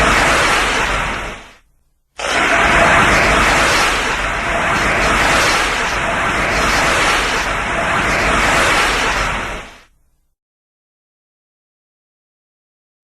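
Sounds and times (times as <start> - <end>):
loud rush of dense noise: 0.0 - 1.6, 2.2 - 9.9.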